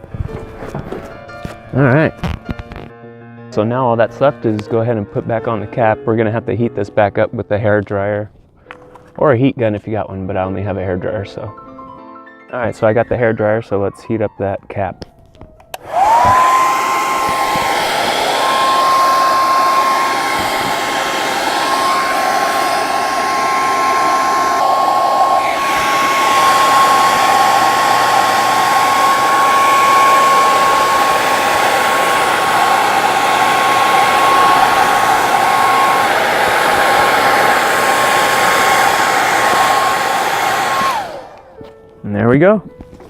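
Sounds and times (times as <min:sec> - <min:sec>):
hair dryer running: 0:15.7 - 0:41.7.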